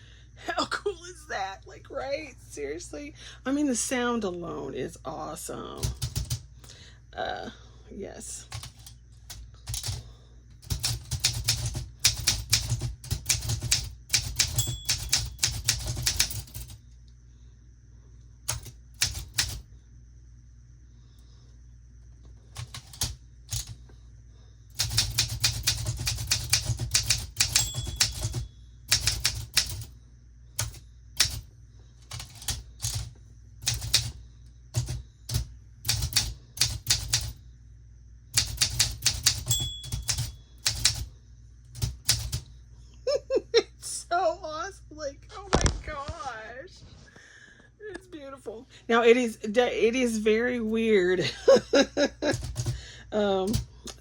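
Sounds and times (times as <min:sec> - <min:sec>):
typewriter key strikes: 0:10.7 - 0:16.5, 0:24.8 - 0:29.8, 0:38.4 - 0:41.0.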